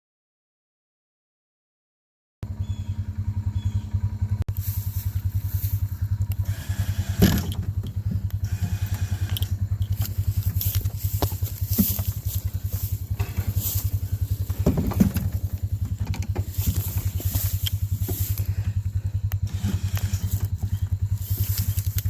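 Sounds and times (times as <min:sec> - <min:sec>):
engine thudding at low speed: 0:02.4 - 0:22.0
knocks and rattles: 0:06.4 - 0:22.0.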